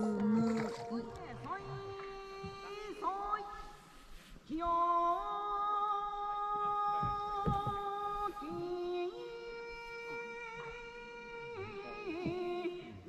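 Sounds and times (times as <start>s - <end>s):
person singing folk song: 0.0s - 13.0s.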